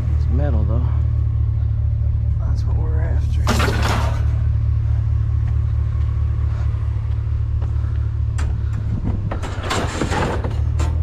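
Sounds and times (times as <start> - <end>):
vehicle engine idling: 0.0 - 11.0
clatter: 3.4 - 4.5, 8.3 - 11.0.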